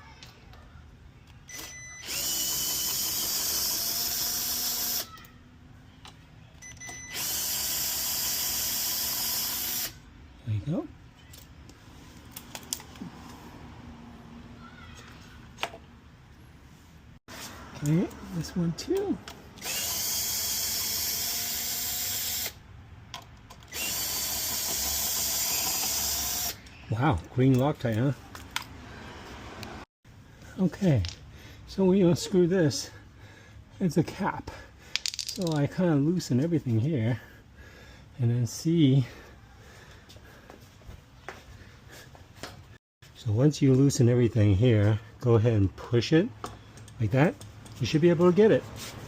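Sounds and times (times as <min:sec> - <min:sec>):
drill trigger blip: 0:01.5 - 0:05.1, 0:06.6 - 0:10.0
power drill spinning: 0:01.5 - 0:05.3, 0:06.9 - 0:10.0, 0:19.6 - 0:22.6, 0:23.6 - 0:26.7.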